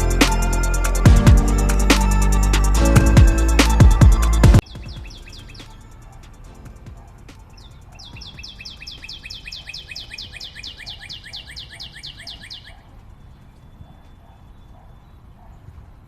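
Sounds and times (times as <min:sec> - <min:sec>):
steady low rumble: 0:00.0 - 0:08.6
bird chirping rapidly: 0:00.0 - 0:15.4.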